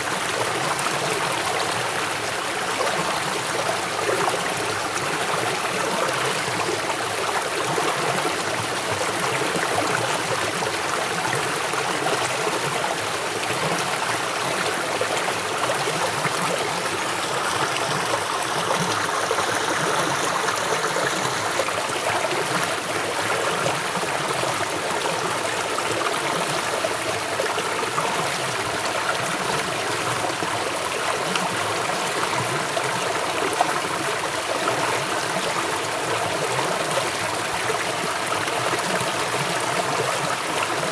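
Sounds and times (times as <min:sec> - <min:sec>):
river water rushing: 0:11.4 - 0:31.2.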